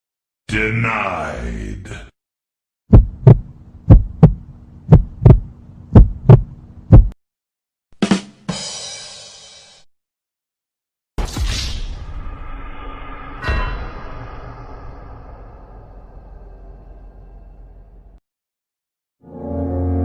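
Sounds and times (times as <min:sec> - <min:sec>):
heartbeat double thumps: 0:02.9 - 0:07.2
steady low hum: 0:02.9 - 0:07.2
sharp hit with ringing tail: 0:11.3 - 0:17.8.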